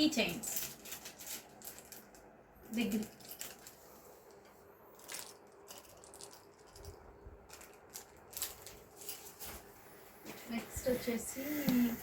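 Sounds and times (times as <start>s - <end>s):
small hard objects clicking: 4.9s - 9.2s.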